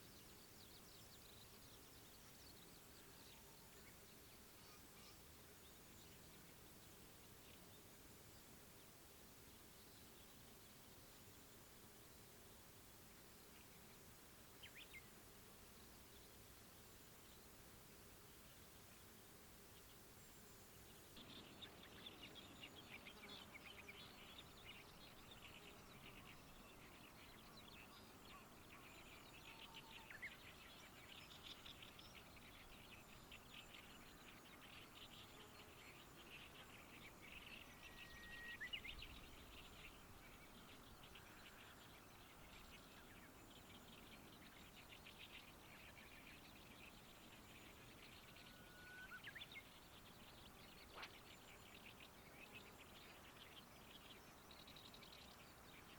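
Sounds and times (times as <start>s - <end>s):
birds chirping: 18.3s - 55.9s.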